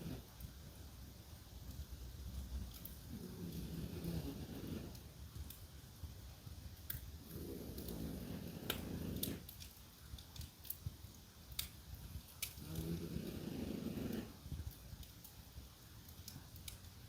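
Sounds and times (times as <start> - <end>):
dog snoring: 0.0 - 0.3, 3.0 - 5.1, 7.2 - 9.5, 12.6 - 14.4
wood fire crackling: 0.0 - 17.0.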